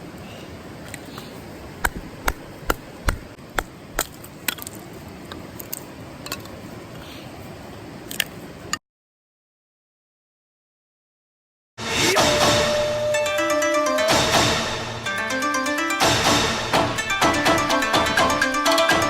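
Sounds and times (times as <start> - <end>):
sharp knocks: 1.8 - 4.1.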